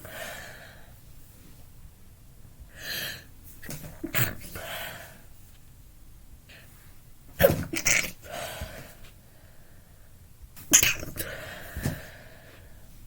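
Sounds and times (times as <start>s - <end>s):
breath out: 11.2s - 12.7s.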